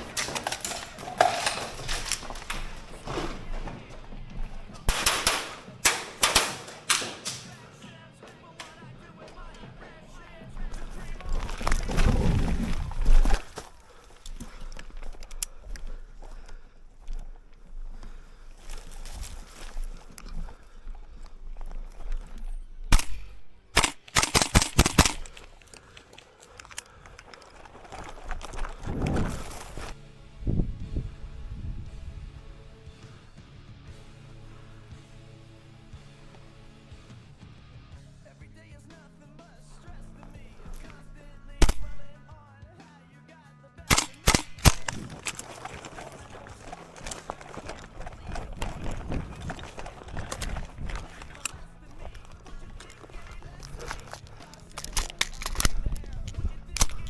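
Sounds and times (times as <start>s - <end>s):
airsoft guns firing: 0.0s - 8.0s, 21.5s - 26.0s, 40.2s - 42.3s, 43.9s - 57.0s
airsoft gun shots: 4.9s - 7.6s, 22.9s - 25.4s, 41.6s - 42.2s, 43.9s - 46.0s.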